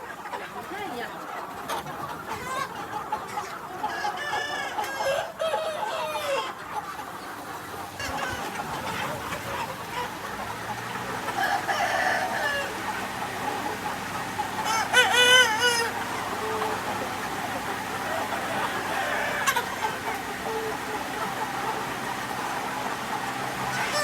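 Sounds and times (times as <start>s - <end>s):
chickens clucking: 0.0s - 24.0s
rooster crowing: 11.3s - 12.8s, 18.0s - 19.9s, 23.8s - 24.0s.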